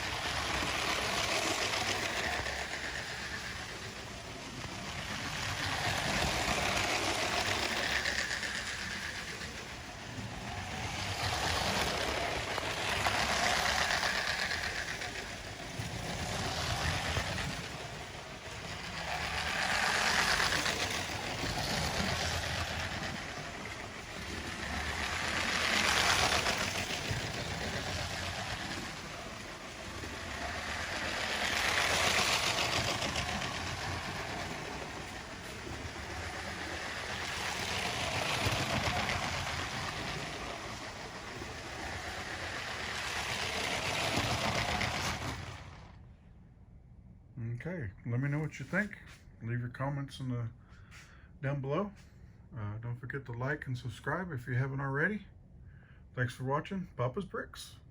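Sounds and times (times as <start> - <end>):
toy train running on plastic track: 0.0 - 46.0.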